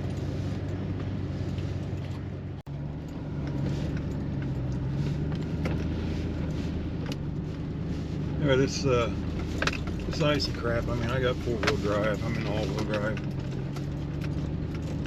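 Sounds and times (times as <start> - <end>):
road noise on icy road: 0.0 - 15.0
truck engine running: 0.0 - 15.0.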